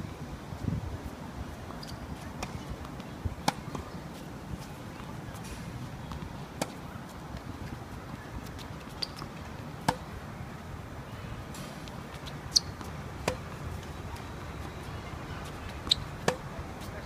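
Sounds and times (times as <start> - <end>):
tennis balls struck by rackets: 9.0 - 10.1, 11.5 - 14.3, 15.8 - 16.6.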